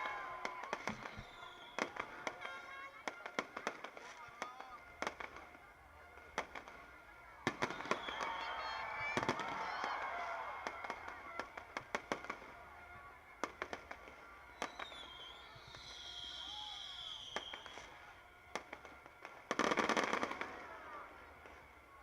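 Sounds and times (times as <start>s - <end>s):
firework whistle: 0.0s - 2.6s, 6.3s - 12.5s, 13.4s - 21.6s
firework bangs and pops: 0.0s - 21.8s
firework crackling: 0.0s - 22.0s.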